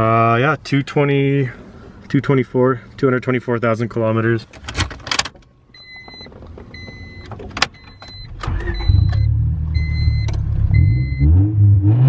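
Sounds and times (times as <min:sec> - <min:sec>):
dashboard warning chime beeping: 0:05.7 - 0:11.4.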